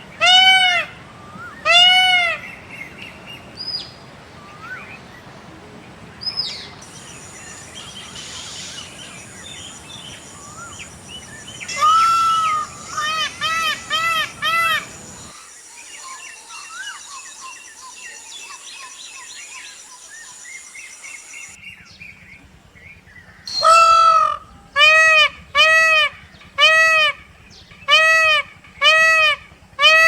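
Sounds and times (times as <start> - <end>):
peacock honking calls: 0.0 - 2.9, 6.8 - 15.3, 23.5 - 30.0
small birds chirping faintly: 2.4 - 23.7.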